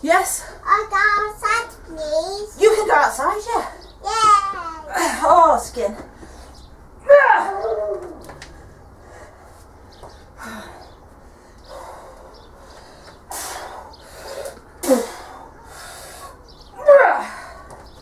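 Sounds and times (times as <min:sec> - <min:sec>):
person exhaling forcefully: 0:13.3 - 0:16.4.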